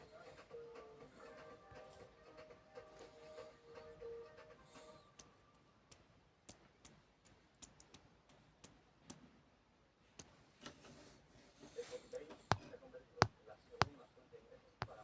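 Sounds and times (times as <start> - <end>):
faint irregular clicks: 4.8 - 9.4, 10.1 - 10.9.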